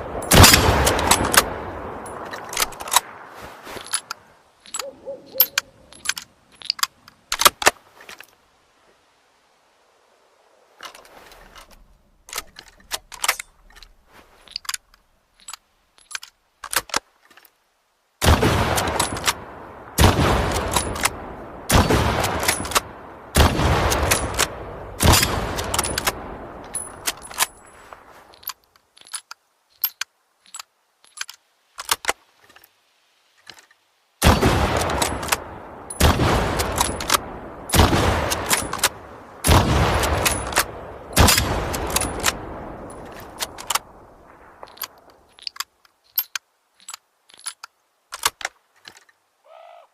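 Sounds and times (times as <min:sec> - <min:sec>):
loud rifle shots: 0:00.1 - 0:02.0, 0:18.2 - 0:26.3, 0:34.2 - 0:42.8
rifle bolt action clicks: 0:40.2 - 0:43.9.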